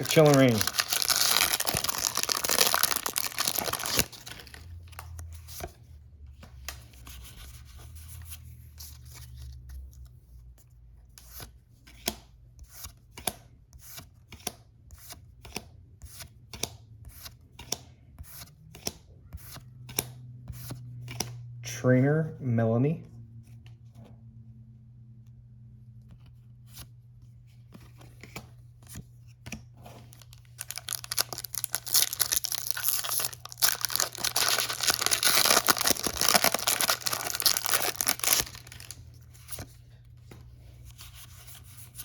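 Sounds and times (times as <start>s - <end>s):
foil wrapper ripping: 0.0s - 4.6s, 30.6s - 39.0s.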